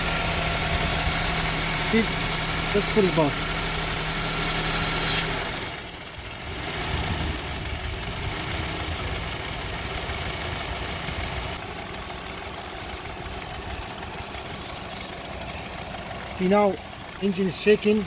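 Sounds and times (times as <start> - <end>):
car engine idling roughly: 0.0 - 18.0.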